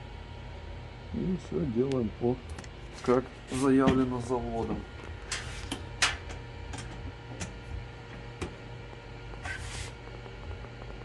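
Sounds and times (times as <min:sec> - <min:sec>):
steady low hum: 0:00.0 - 0:11.0
short hissing noises: 0:09.4 - 0:10.0.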